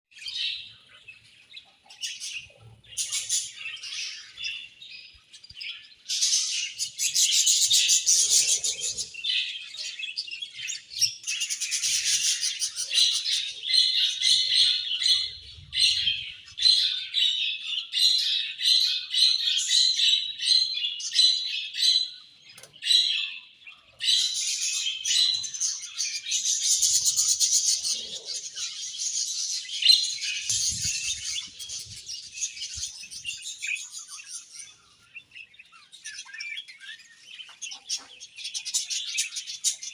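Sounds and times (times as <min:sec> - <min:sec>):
budgerigars chirping and warbling: 0:00.2 - 0:39.9.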